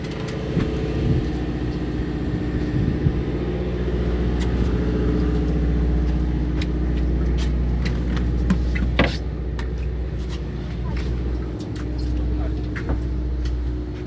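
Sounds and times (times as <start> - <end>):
boat engine droning: 0.0 - 14.0.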